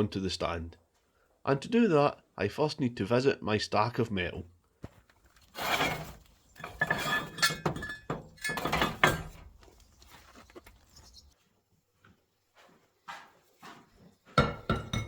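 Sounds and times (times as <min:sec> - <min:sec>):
scrap metal clanking: 0:05.5 - 0:09.6.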